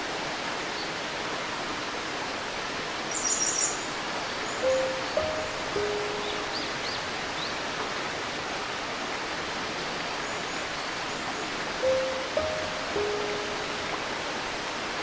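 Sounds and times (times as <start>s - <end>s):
river water flowing: 0.0s - 15.0s
faint bird chirps: 4.5s - 7.5s
soft piano note: 4.6s - 7.5s, 11.8s - 14.6s.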